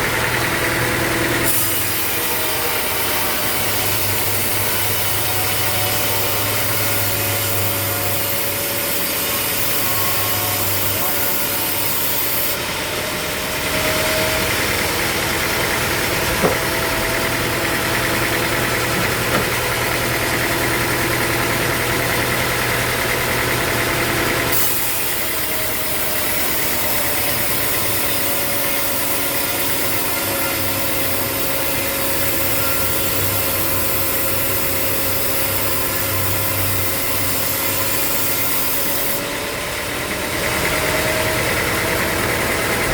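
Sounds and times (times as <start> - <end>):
sawmill machinery humming: 0.0 - 42.9
short knocks: 16.2 - 17.0, 18.9 - 19.7.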